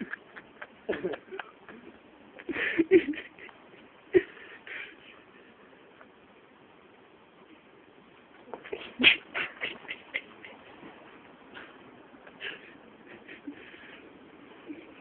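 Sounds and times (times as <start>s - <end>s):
person sneezing: 8.6s - 10.2s.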